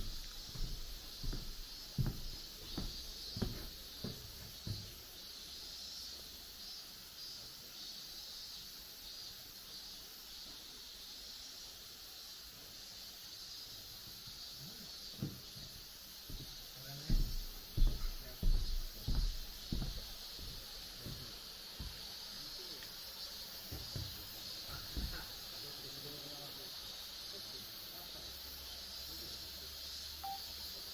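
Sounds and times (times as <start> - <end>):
footsteps on a path: 0.0 - 5.0, 16.2 - 22.1
steady high hiss: 0.0 - 30.9.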